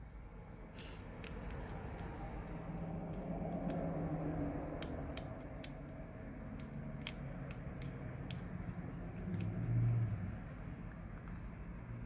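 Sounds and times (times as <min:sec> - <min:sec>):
small screwdriver clicks and ticks: 0:06.6 - 0:11.4.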